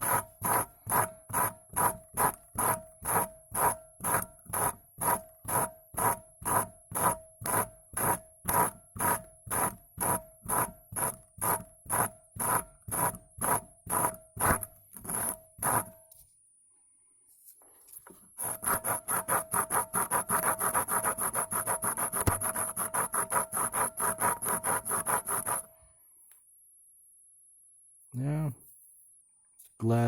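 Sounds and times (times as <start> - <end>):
hand tool scraping glass bulb: 0.0 - 16.0, 18.4 - 25.7.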